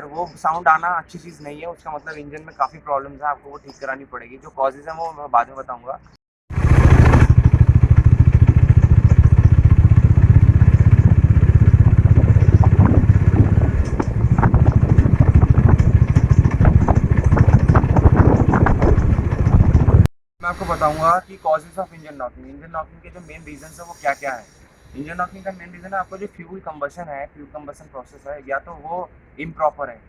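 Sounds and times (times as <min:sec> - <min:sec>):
engine knocking ticks: 0:06.5 - 0:20.1
motorcycle engine running: 0:06.5 - 0:20.1.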